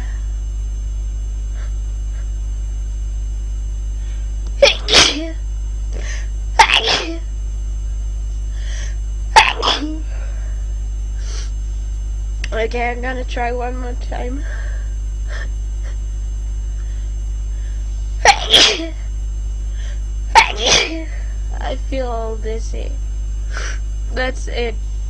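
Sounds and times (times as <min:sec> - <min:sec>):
person sneezing: 0:04.6 - 0:05.4, 0:06.0 - 0:07.2, 0:09.4 - 0:10.2, 0:18.2 - 0:19.0, 0:20.4 - 0:21.2.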